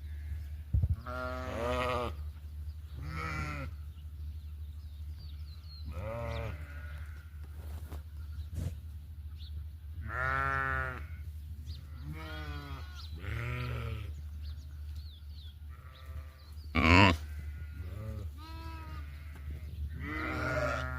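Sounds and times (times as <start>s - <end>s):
goats bleating: 3.0s - 3.7s, 12.0s - 14.1s, 15.8s - 20.9s.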